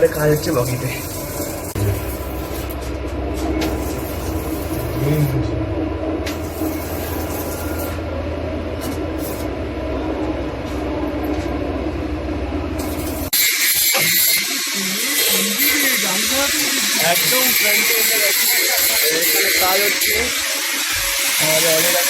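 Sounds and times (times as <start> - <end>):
train machinery hum and rumble: 0.0 - 17.4.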